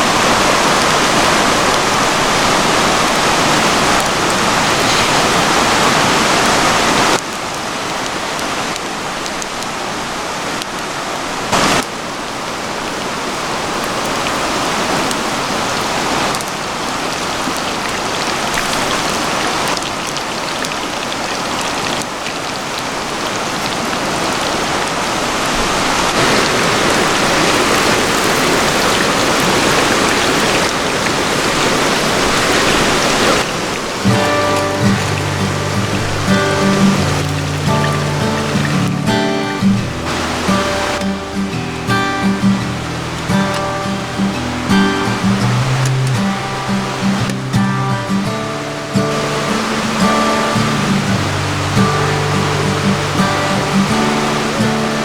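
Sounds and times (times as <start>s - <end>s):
rain falling: 0.0s - 55.0s
river water running: 0.0s - 55.0s.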